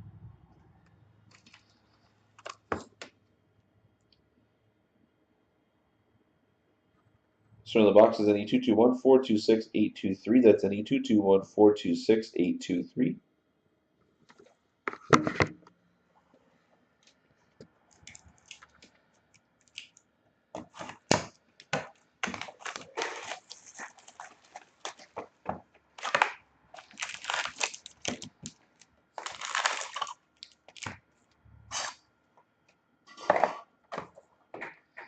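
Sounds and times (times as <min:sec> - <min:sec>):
plastic wrapping tearing and crinkling: 0:18.0 - 0:18.9, 0:19.6 - 0:20.0, 0:20.7 - 0:25.3, 0:25.9 - 0:31.0, 0:31.7 - 0:32.0.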